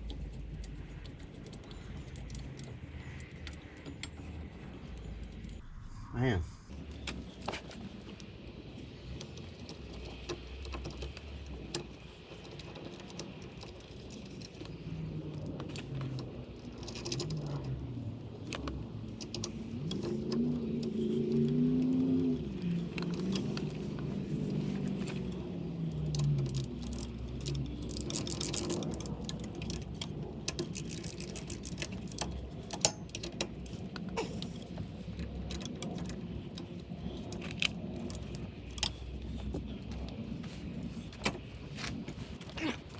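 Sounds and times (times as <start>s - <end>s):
low wavering hum: 0.0s - 9.0s.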